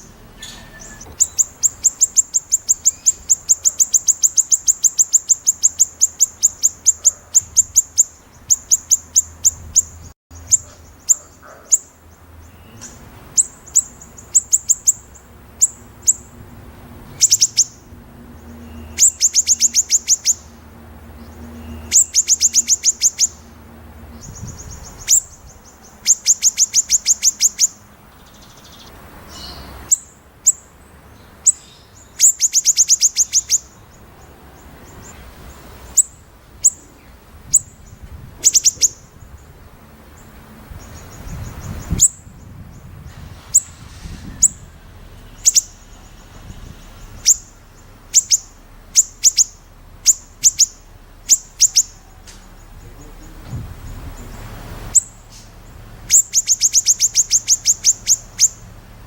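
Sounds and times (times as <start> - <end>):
bird singing sharp high notes: 0.0 - 16.3, 17.1 - 20.6, 21.2 - 23.5, 24.2 - 30.6, 43.4 - 53.4, 54.1 - 58.8.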